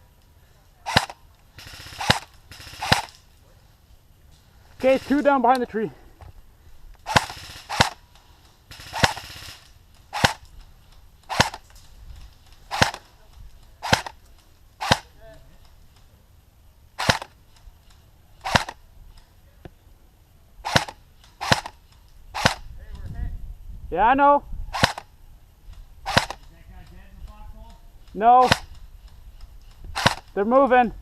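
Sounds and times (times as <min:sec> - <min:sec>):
airsoft gun shots: 0:00.9 - 0:03.2, 0:07.0 - 0:08.0, 0:08.7 - 0:10.5, 0:11.3 - 0:11.6, 0:12.7 - 0:13.0, 0:13.8 - 0:14.2, 0:14.8 - 0:15.1, 0:17.0 - 0:17.4, 0:18.4 - 0:18.8, 0:20.6 - 0:21.8, 0:22.4 - 0:22.7, 0:24.7 - 0:25.1, 0:26.0 - 0:26.4, 0:28.4 - 0:28.8, 0:30.0 - 0:30.4.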